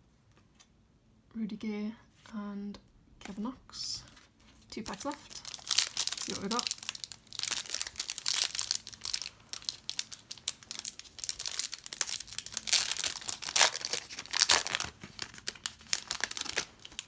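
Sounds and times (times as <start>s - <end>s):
plastic wrapper tearing and crinkling: 4.9s - 17.0s.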